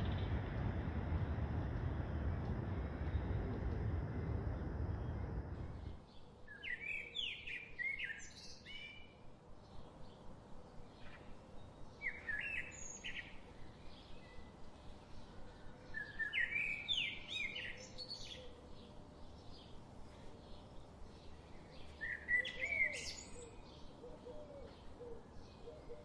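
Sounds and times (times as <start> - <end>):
low rushing noise: 0.0 - 6.0
songbirds singing: 0.0 - 26.0.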